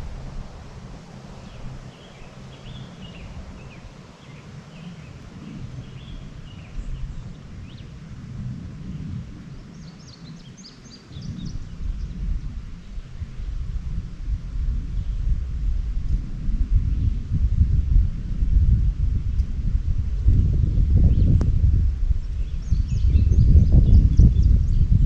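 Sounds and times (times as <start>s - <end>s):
songbirds chirping: 0.0s - 13.7s, 22.2s - 25.0s
wind rumble on microphone: 0.0s - 25.0s.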